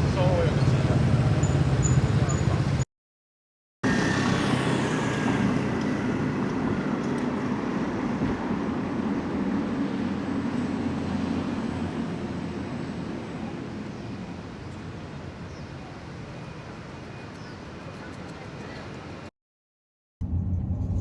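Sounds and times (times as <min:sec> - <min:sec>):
road noise: 0:00.0 - 0:02.9, 0:03.8 - 0:19.3, 0:20.2 - 0:21.0
synthetic engine rumble: 0:20.2 - 0:21.0.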